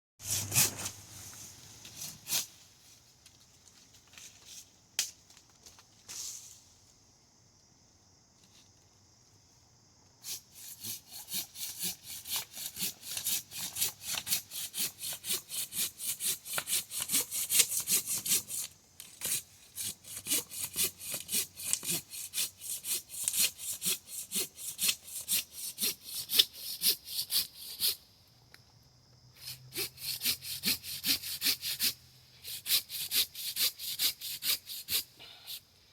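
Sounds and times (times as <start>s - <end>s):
hand saw cutting wood: 0.2s - 1.0s, 10.2s - 28.0s, 29.4s - 35.6s.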